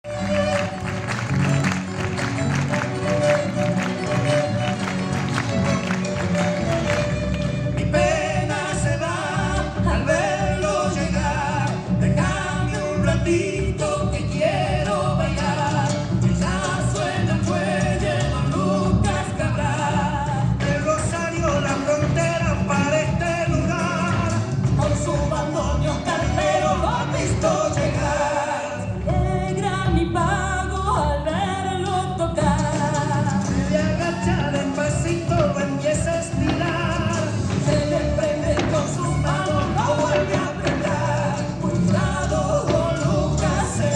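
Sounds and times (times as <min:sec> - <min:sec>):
instrumental accompaniment: 0:00.0 - 0:08.4, 0:32.7 - 0:43.9
folk dance music: 0:00.0 - 0:43.9
person singing: 0:07.8 - 0:43.9.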